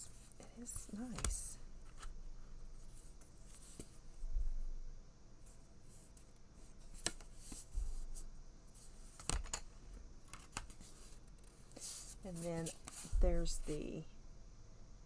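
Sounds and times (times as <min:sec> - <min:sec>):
soft low thumps: 0:04.2 - 0:04.9, 0:13.1 - 0:13.8.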